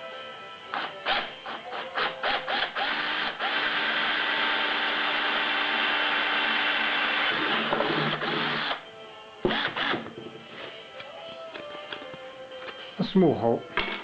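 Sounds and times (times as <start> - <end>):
small electric drill drilling plastic: 2.0 - 8.8.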